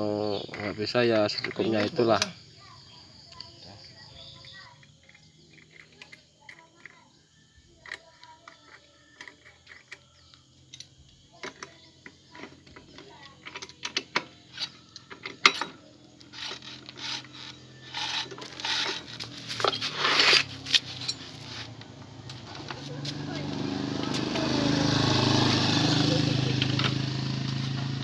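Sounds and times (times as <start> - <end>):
metal tools clicking and ratcheting: 0.2 - 2.3, 4.4 - 22.4
metal parts rattling: 7.8 - 21.8.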